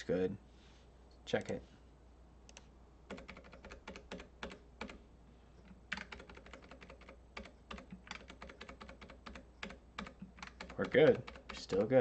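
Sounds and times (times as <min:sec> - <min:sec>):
typing on a keyboard: 0:03.1 - 0:05.0, 0:05.9 - 0:12.0.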